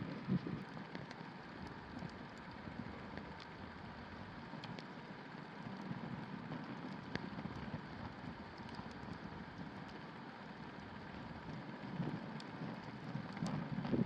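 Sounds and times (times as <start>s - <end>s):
campfire pops: 6.0s - 10.1s, 11.2s - 14.0s.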